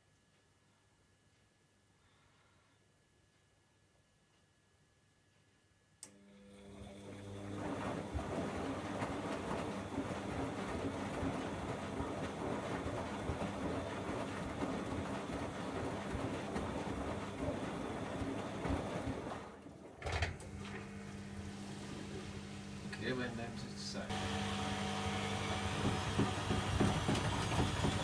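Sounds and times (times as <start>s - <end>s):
washing machine drum tumbling: 7.1s - 22.5s, 24.1s - 28.0s
water sloshing: 7.4s - 22.9s.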